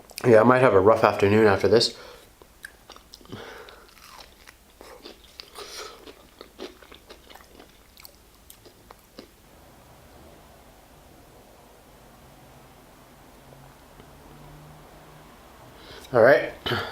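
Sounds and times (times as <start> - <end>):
person chewing food: 2.2 - 9.4
small crunches: 2.4 - 9.4.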